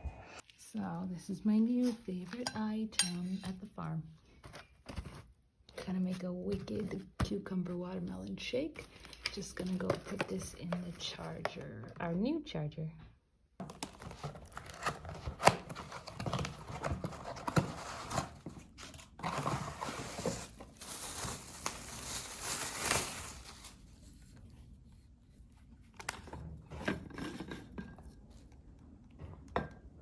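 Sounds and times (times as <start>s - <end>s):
rustling: 16.7s - 26.0s.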